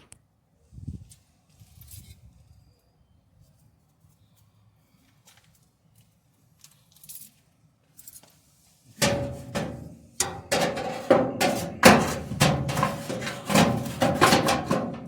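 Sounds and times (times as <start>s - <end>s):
ringing metallic knocks: 9.0s - 15.0s.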